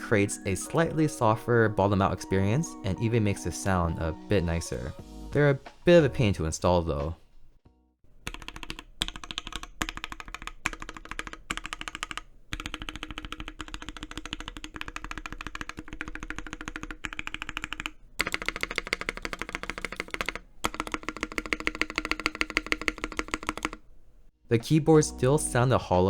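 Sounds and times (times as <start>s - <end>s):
fast keyboard typing clacks: 8.2s - 23.9s.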